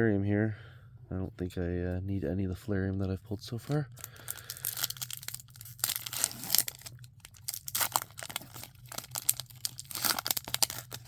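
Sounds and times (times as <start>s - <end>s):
packaging crinkling: 3.9s - 11.0s.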